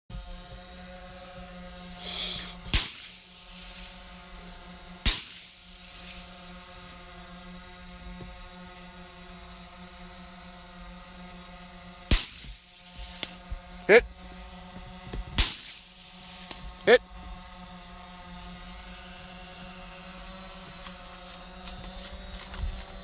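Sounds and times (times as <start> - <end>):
steady hum: 0.1 - 23.0
rifle shots cracking: 2.7 - 3.2, 5.0 - 5.5, 15.4 - 15.8.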